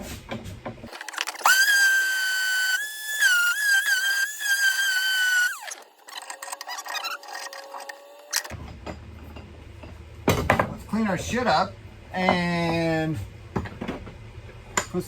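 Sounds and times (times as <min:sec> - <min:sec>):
electric sander motor whining: 0:01.3 - 0:08.4.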